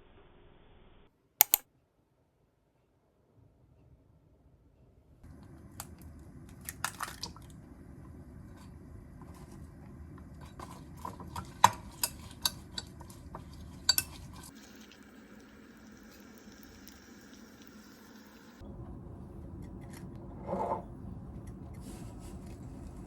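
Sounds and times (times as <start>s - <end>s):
steady low hum: 5.2s - 23.0s
dishes clinking and clattering: 10.4s - 14.5s, 19.9s - 21.0s.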